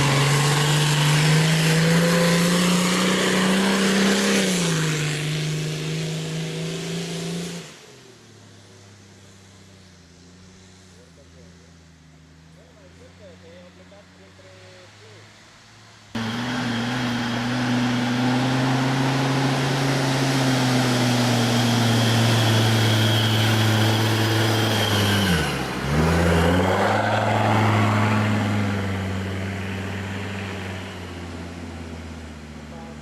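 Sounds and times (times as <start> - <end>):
engine running at high revs: 0.0 - 8.0, 16.2 - 33.0.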